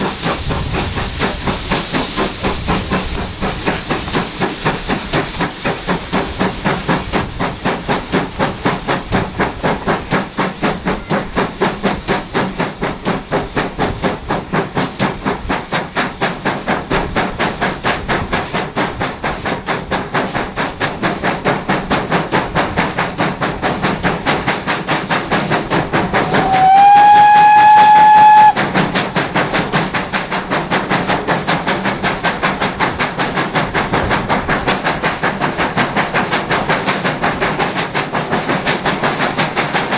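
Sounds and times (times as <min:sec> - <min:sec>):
steam locomotive exhaust beats: 0:00.0 - 0:39.9
steam whistle blast: 0:26.2 - 0:28.6.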